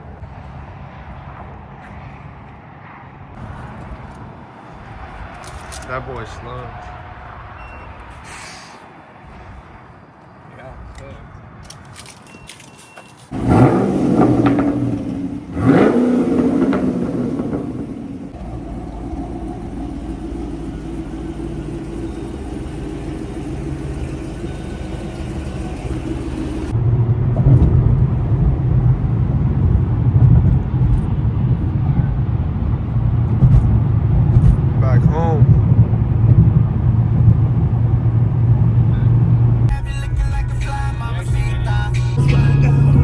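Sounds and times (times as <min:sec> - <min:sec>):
car engine revving and cruising: 0:13.3 - 0:43.0.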